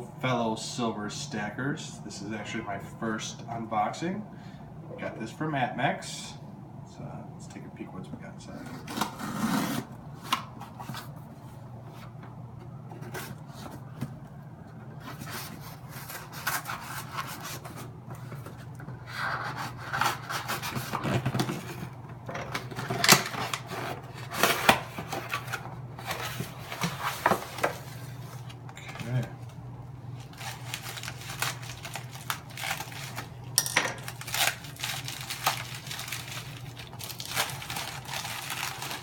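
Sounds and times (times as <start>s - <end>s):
cardboard box scraping and rustling: 8.8s - 9.9s.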